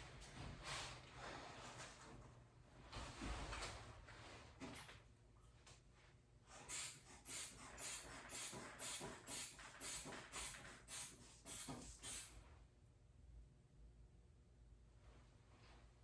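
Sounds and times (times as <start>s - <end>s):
hand bulb squeezing air: 6.6s - 12.4s.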